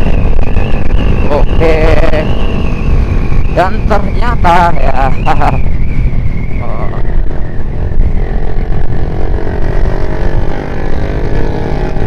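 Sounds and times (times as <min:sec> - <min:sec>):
wind rumble on microphone: 0:00.0 - 0:12.0
motorcycle engine running: 0:05.2 - 0:12.0.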